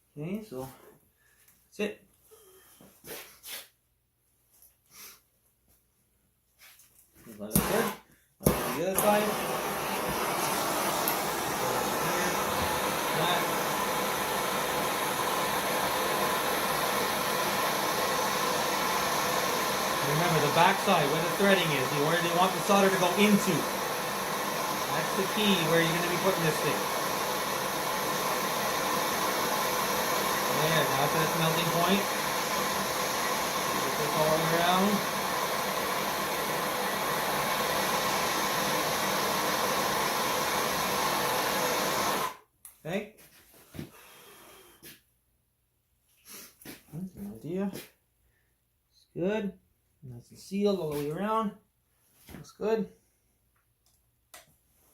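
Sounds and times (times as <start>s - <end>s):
gas torch hissing: 7.6s - 42.4s.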